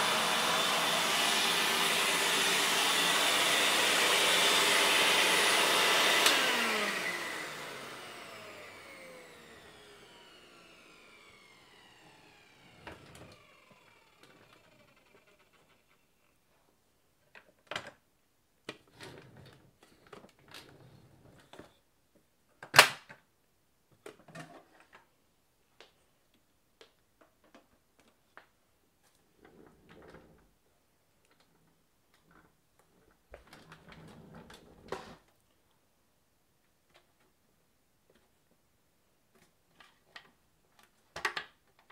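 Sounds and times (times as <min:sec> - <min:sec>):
plastic clicks and rattles: 0:39.4 - 0:41.9.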